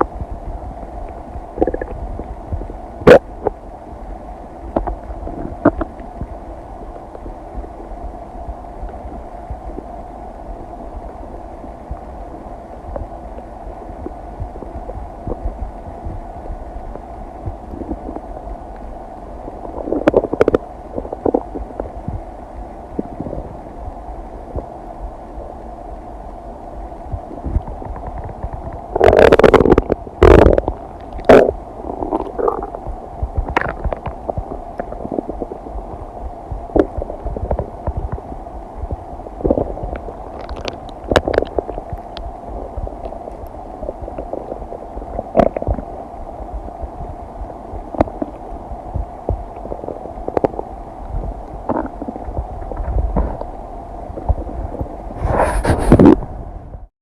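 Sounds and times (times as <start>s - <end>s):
steady low hum: 0.0s - 56.9s
stomach gurgles and rumbles: 0.0s - 56.9s.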